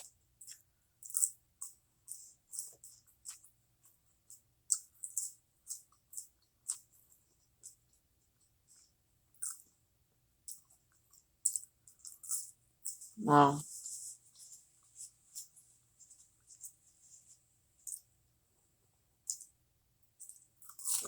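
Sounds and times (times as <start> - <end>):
chewing food: 0.0 - 18.2, 19.1 - 21.0
wet mouth clicks and smacks: 4.3 - 7.8, 9.4 - 9.6.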